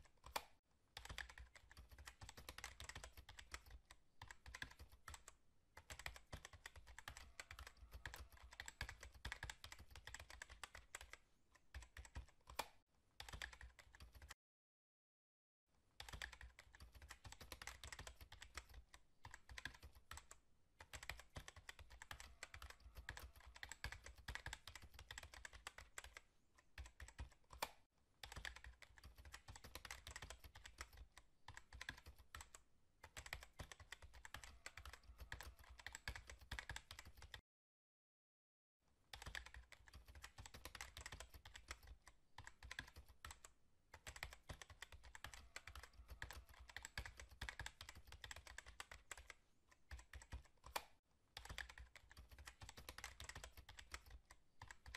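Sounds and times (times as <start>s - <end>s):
computer keyboard typing: 0.1s - 14.4s, 16.0s - 37.4s, 39.1s - 54.9s.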